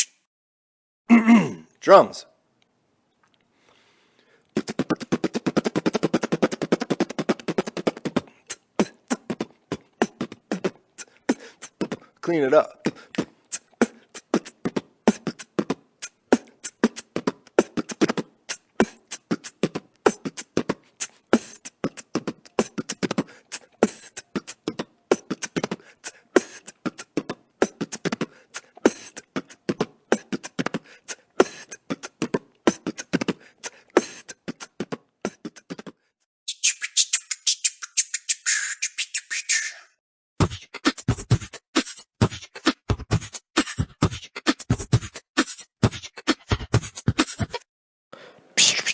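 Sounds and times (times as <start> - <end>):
beatboxing: 0.0 - 0.2, 4.5 - 47.7, 48.6 - 48.9
high hissing scratch-like sound: 48.6 - 48.9.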